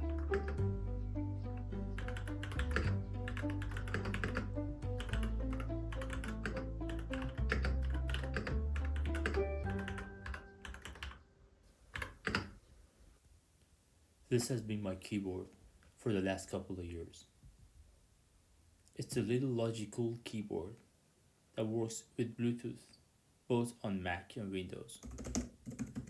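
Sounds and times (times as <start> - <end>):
keyboard typing: 0.0 - 0.7, 1.5 - 11.2, 11.9 - 12.6, 25.0 - 26.0
background music: 0.0 - 11.6.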